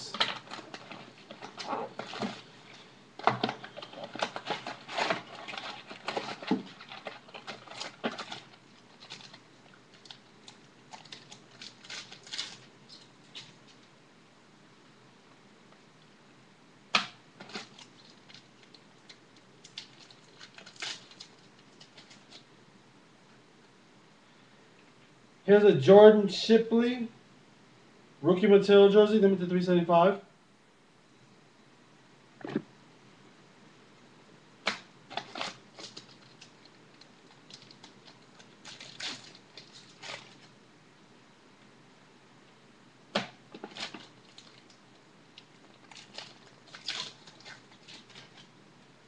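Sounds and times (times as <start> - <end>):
trading cards rustling and scraping: 0.0 - 9.4, 35.1 - 40.5.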